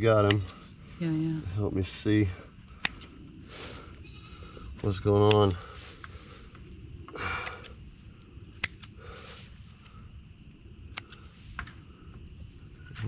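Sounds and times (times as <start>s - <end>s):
soft rustling: 2.7s - 7.1s
hoof shears clicking: 4.2s - 6.2s.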